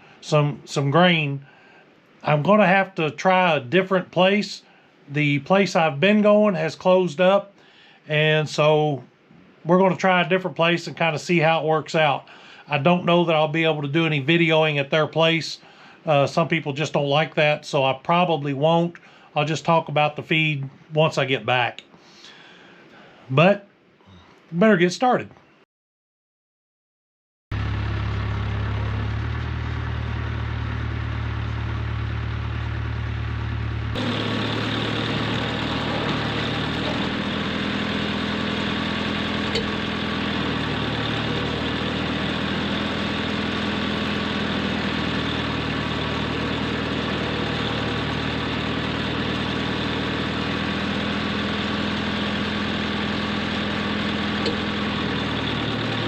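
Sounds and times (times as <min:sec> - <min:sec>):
tractor engine running: 0:27.5 - 0:56.0.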